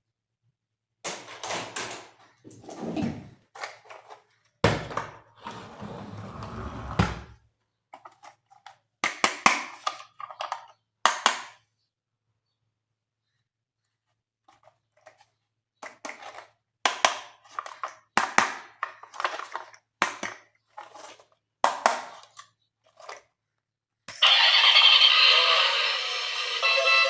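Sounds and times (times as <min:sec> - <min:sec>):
toy packaging rustling: 0:18.7 - 0:23.5.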